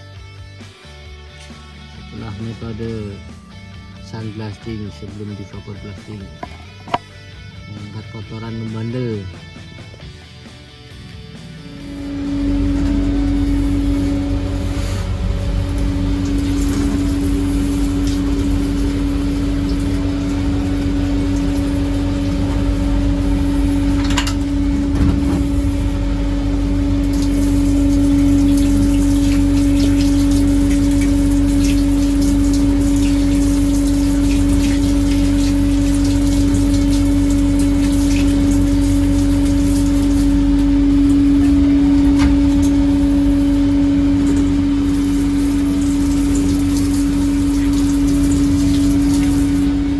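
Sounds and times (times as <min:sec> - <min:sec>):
motor or pump hum: 0:00.0 - 0:49.9.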